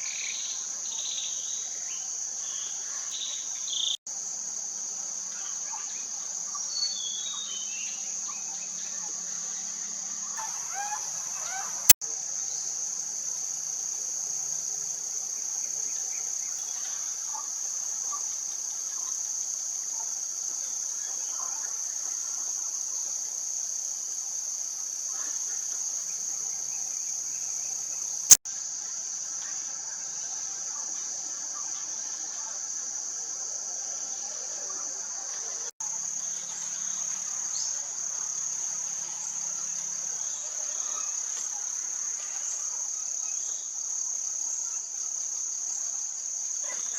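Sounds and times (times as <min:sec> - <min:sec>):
insects chorus drone: 0:00.0 - 0:46.9.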